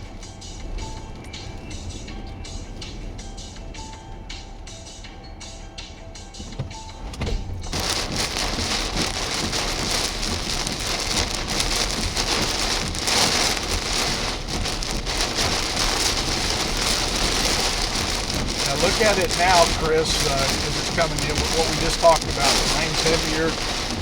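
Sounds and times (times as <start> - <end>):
low rumble: 6.9 - 24.0
heavy rain hiss: 7.6 - 24.0.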